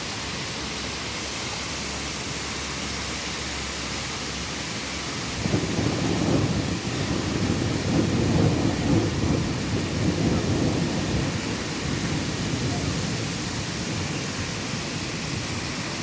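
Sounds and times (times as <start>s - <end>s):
steady rain hiss: 0.0s - 16.0s
thunder rumbling: 5.2s - 16.0s.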